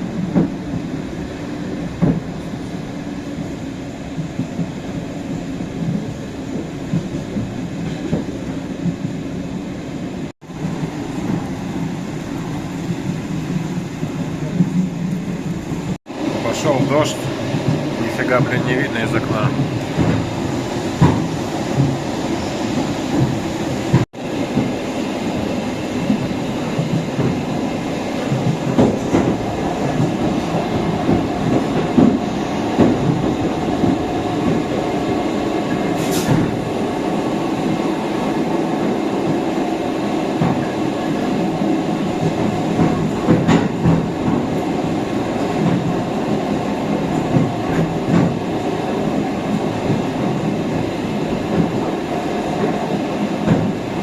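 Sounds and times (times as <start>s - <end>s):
train rumble: 0.0s - 54.0s
wheels clacking over rail joints: 12.8s - 54.0s.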